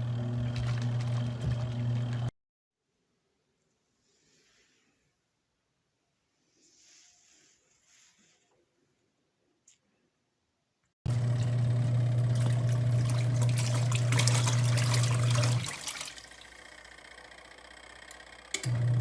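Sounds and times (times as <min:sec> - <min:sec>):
washing machine motor churning water: 0:00.0 - 0:02.3, 0:11.1 - 0:19.0
washing machine motor click: 0:18.0 - 0:19.0.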